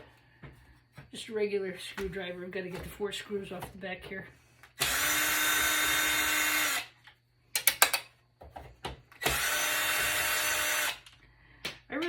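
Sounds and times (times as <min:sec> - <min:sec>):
power screwdriver spinning: 0:04.7 - 0:06.9, 0:09.2 - 0:11.1.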